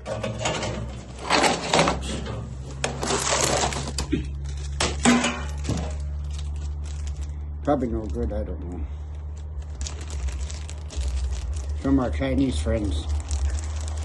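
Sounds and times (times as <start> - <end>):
tools clattering and rustling: 0.0 - 7.2.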